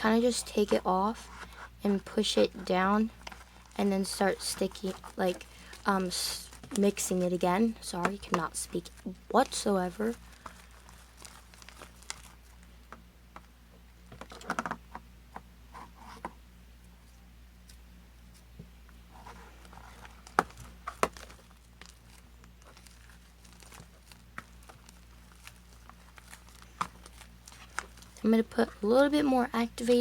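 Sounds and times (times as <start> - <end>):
slime squishing and crackling: 2.2 - 12.5, 19.7 - 29.2.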